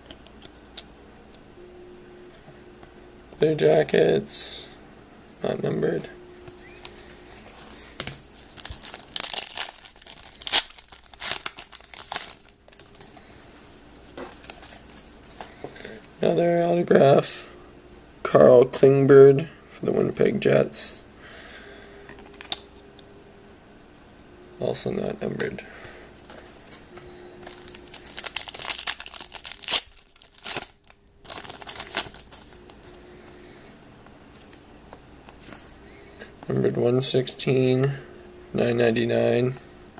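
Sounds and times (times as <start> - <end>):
card pack wrapper crinkling and tearing: 8.4 - 13.1, 27.5 - 32.9.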